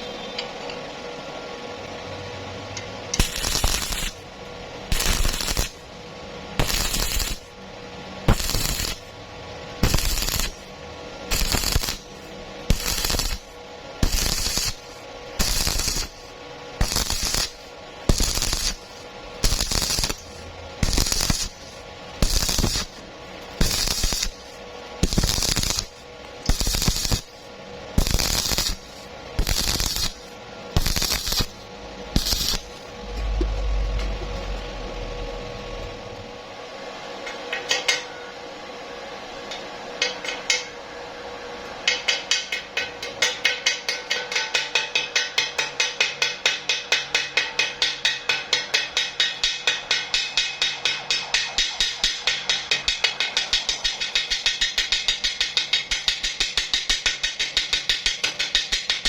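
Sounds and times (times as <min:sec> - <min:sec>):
welding arc crackling: 0:03.0 - 0:34.7, 0:49.2 - 0:59.0.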